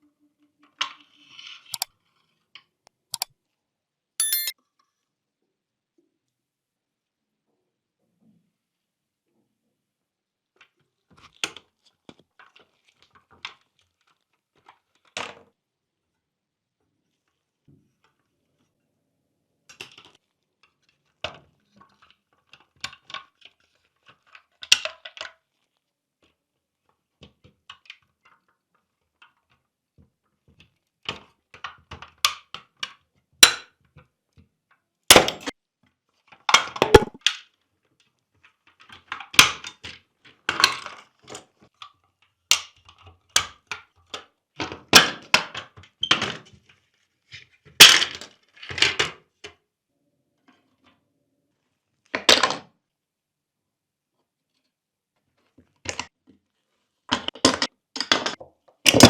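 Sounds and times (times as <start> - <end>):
small parts clicking and tapping: 4.2 - 4.5.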